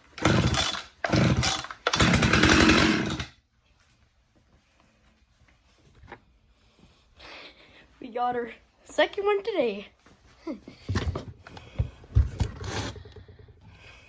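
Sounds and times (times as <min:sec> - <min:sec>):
chainsaw engine sputtering: 0:00.2 - 0:03.3.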